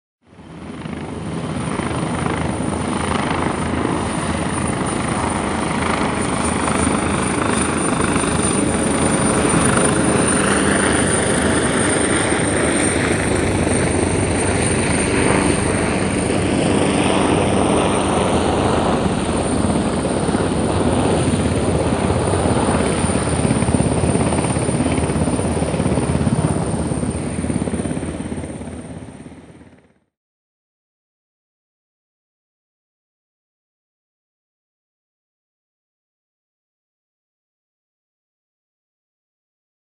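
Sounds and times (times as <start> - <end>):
helicopter flying over: 0.2 - 30.1.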